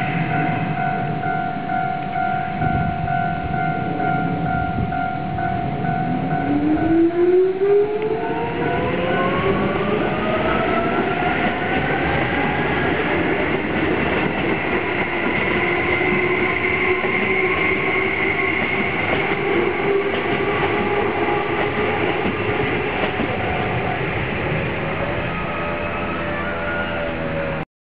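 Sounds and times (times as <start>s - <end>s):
level crossing warning bell: 0.0s - 27.4s
electric train motor whine: 0.0s - 27.6s
train wheels clattering on rails: 8.3s - 24.7s.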